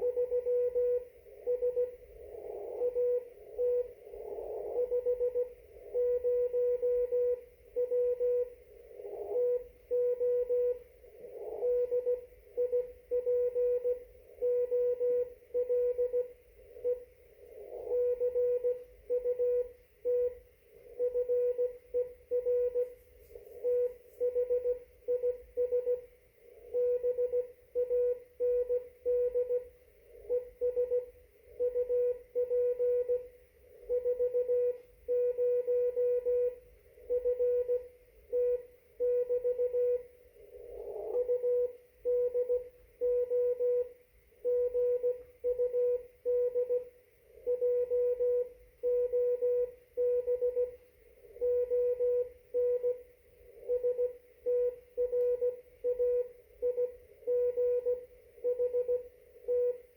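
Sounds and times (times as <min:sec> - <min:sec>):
morse code tone: 0:23.6 - 0:26.1, 0:33.9 - 0:40.1, 0:41.2 - 0:43.9, 0:44.5 - 0:46.9, 0:47.5 - 0:50.8.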